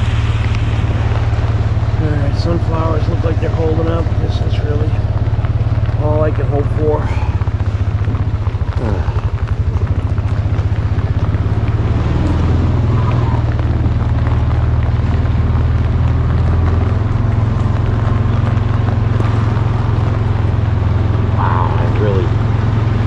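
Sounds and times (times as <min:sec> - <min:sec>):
small vehicle engine running: 0:00.0 - 0:23.0.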